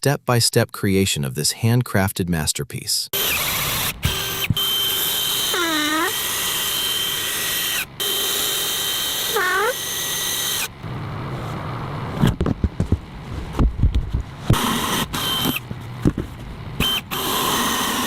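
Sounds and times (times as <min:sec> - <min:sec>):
power tool whining: 0:03.2 - 0:10.8, 0:14.5 - 0:15.7, 0:16.8 - 0:18.0
handling noise with knocks: 0:12.2 - 0:14.6, 0:15.5 - 0:16.5.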